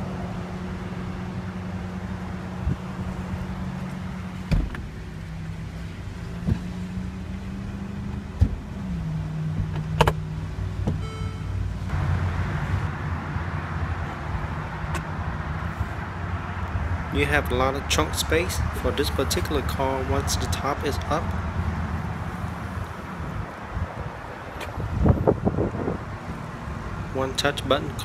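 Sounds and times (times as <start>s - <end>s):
short beeps: 11.0s - 11.6s.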